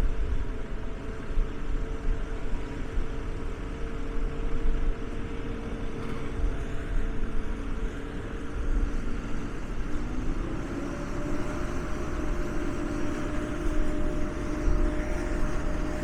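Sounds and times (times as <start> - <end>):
log baler engine running: 2.2 - 16.0.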